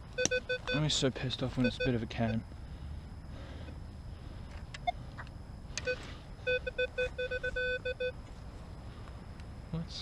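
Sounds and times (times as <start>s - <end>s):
metal detector beeping: 0.0s - 2.4s, 5.8s - 8.2s.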